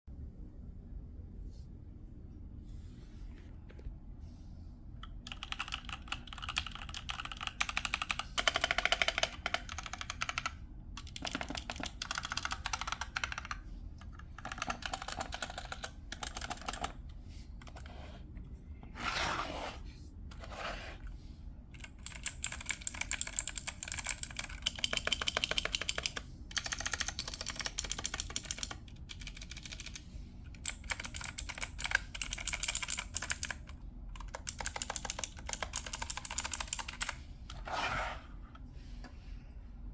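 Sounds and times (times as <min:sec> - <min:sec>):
typing on mechanical keyboard: 0:05.1 - 0:17.0, 0:21.7 - 0:37.2.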